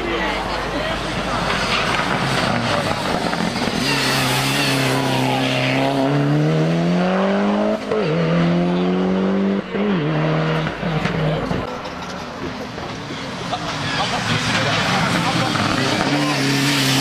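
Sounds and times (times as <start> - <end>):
race car engine accelerating: 1.4 - 11.7, 13.5 - 17.0.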